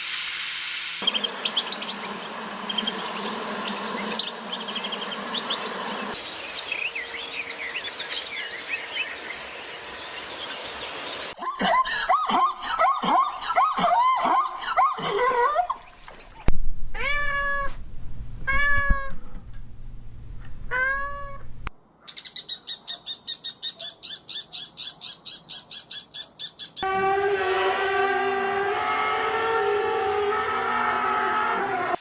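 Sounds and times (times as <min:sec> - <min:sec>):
cat meowing: 0:17.0 - 0:17.8, 0:18.5 - 0:19.2, 0:20.7 - 0:21.4.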